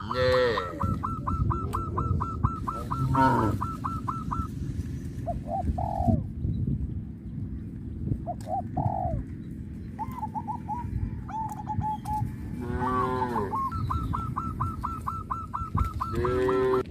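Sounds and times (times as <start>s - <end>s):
honking fowl call: 0.0s - 4.6s, 12.4s - 16.9s
dove cooing: 0.0s - 6.4s, 8.1s - 16.9s
steady low hum: 0.0s - 16.9s
rapid bird chirps: 0.8s - 6.8s, 13.4s - 16.8s.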